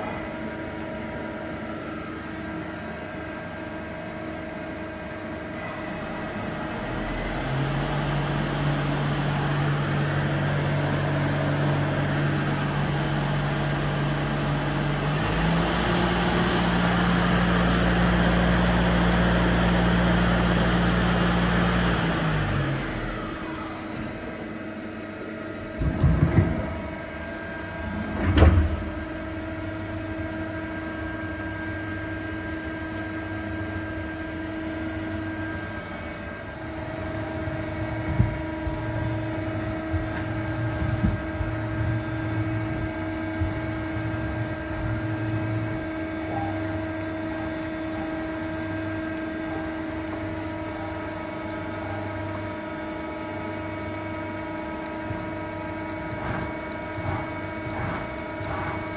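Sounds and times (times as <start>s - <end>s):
lathe spindle drone: 0.0s - 25.3s, 26.6s - 58.9s
quiet machine hum: 0.0s - 58.9s
loud machine knocks: 25.8s - 26.8s, 28.1s - 29.0s.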